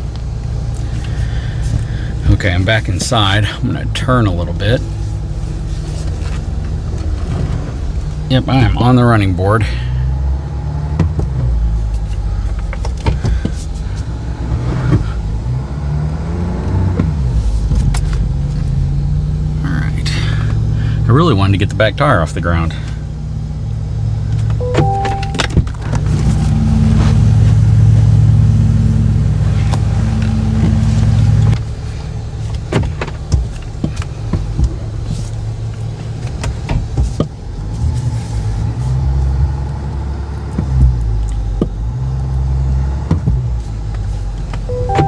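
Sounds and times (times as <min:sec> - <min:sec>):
pickup truck engine rumbling: 0:00.0 - 0:45.0
two-note electronic beep: 0:24.6 - 0:25.5, 0:44.7 - 0:45.0.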